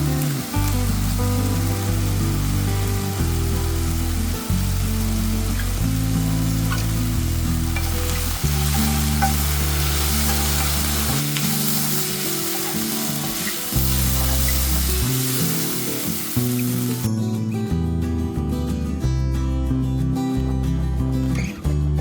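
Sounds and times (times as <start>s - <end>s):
food sizzling in a frying pan: 0.0s - 17.1s
low background music: 0.0s - 22.0s
stirring clicks: 6.6s - 17.1s.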